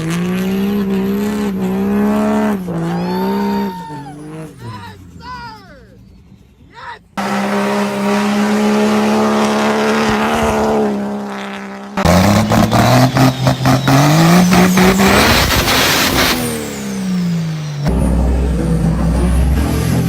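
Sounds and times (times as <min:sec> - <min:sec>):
pickup engine revving: 0:00.0 - 0:05.2, 0:05.9 - 0:20.0.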